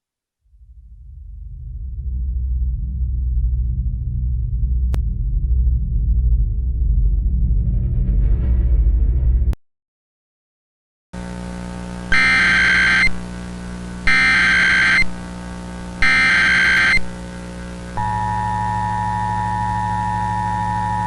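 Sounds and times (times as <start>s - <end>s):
rumbling music sting: 0.5s - 9.5s
electrical hum: 11.2s - 21.0s
raspy digital data bursts: 12.1s - 13.2s, 14.1s - 15.2s, 16.0s - 17.1s
two-tone attention signal: 12.1s - 13.2s, 14.1s - 15.1s, 16.0s - 17.1s, 18.0s - 21.0s.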